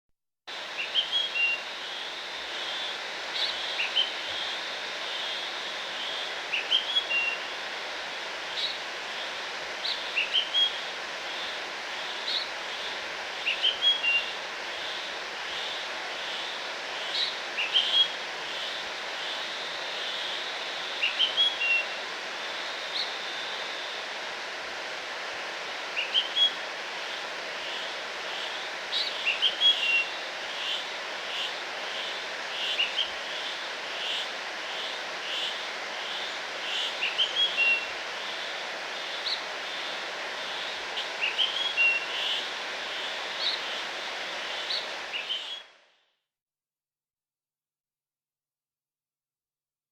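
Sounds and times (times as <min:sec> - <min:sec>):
small birds chirping: 0:00.6 - 0:01.6, 0:41.0 - 0:42.5.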